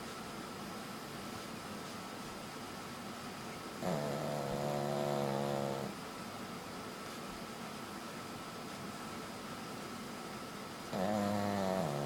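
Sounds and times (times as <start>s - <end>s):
steady fan hiss: 0.0s - 12.0s.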